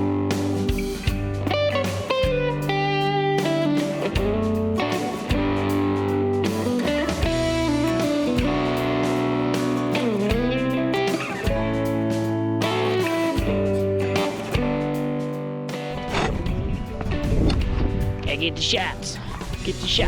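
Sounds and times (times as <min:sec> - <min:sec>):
electric guitar: 0:00.0 - 0:20.0
bass line: 0:04.1 - 0:15.2.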